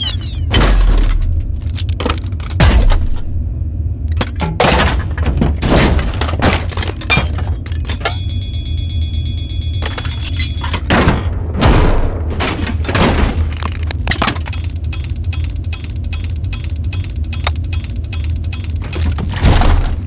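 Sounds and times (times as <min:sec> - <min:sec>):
metal mechanism clanks and rattles: 0:00.0 - 0:03.5, 0:04.1 - 0:08.7, 0:09.8 - 0:20.0
low industrial hum: 0:00.0 - 0:20.0
fast dense ticking: 0:13.8 - 0:19.3.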